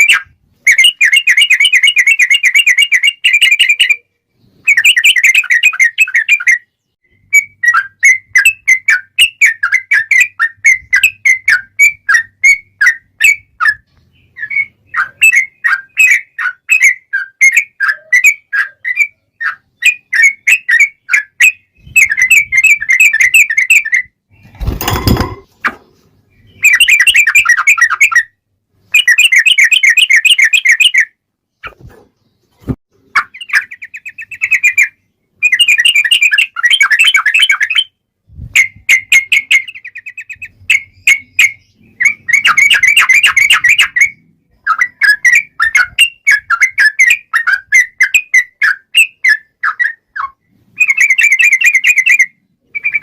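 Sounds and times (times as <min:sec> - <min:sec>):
bird rattling trills: 0:24.4 - 0:25.5.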